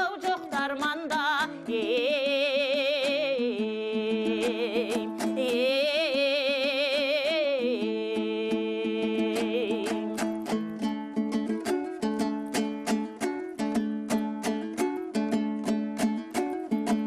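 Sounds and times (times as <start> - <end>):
person singing with vibrato: 0.0 - 10.5
strummed lute: 0.0 - 17.0.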